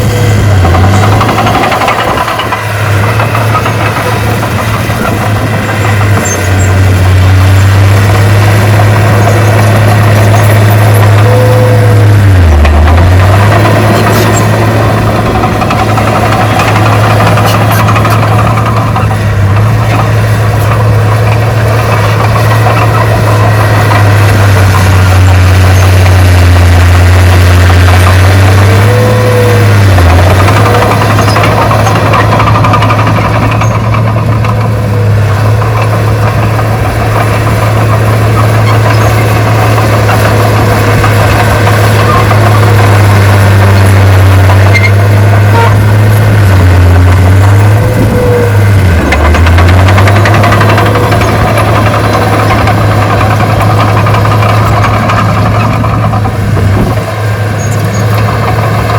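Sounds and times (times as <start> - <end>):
heavy diesel engine running: 0.0 - 58.9.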